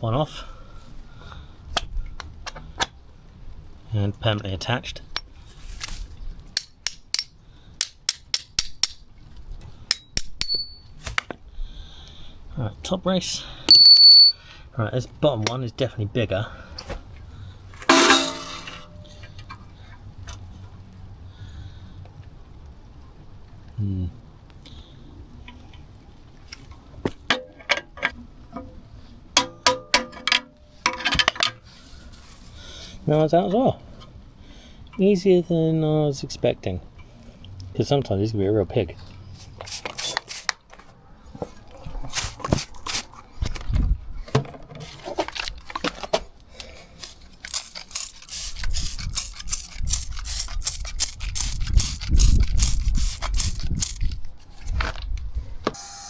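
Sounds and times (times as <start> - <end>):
hammer striking metal: 17.9 - 19.0, 29.4 - 30.5.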